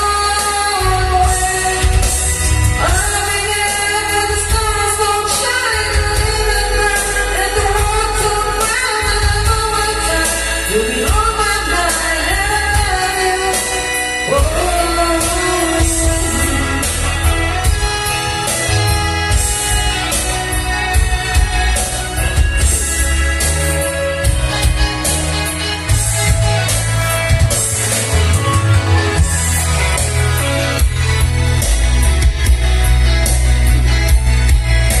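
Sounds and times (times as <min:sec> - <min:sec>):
pop song with singing voice: 0:00.0 - 0:35.0
strong steady bass: 0:14.4 - 0:35.0.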